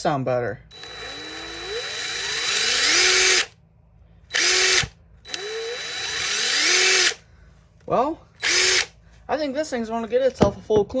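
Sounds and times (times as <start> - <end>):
cordless impact driver motor: 0.7 - 3.6, 4.3 - 7.2, 8.4 - 9.0.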